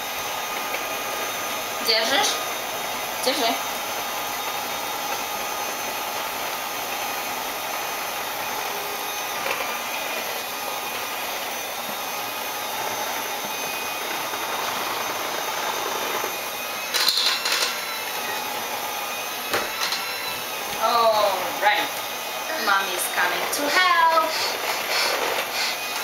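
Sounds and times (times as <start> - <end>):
electric hand mixer running: 0.0 - 26.0.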